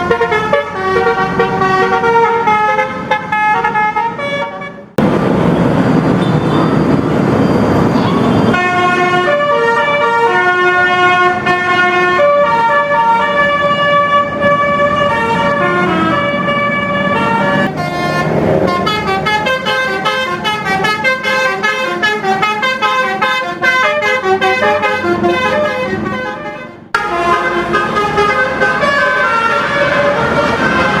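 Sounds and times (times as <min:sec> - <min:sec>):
bus musical horn playing a tune: 0:00.0 - 0:05.0, 0:08.5 - 0:31.0
rushing noise: 0:04.8 - 0:10.0, 0:12.8 - 0:20.9, 0:24.7 - 0:31.0.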